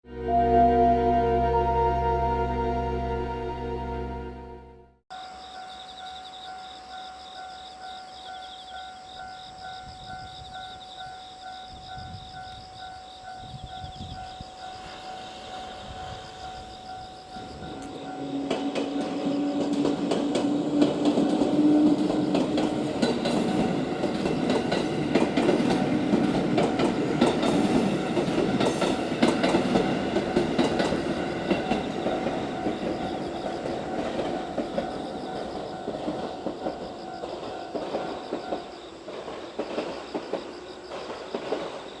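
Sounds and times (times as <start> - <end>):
crossing alarm warning tone: 0.1 - 38.8
train wheels clattering: 14.8 - 42.0.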